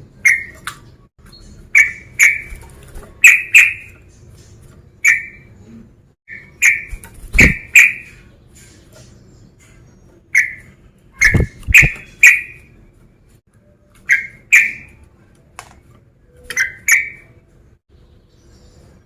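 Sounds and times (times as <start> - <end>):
bulbul calling: 0.2 - 0.8, 1.4 - 2.6, 3.2 - 4.1, 5.0 - 5.7, 6.3 - 8.3, 10.3 - 12.7, 14.1 - 15.0, 16.5 - 17.3.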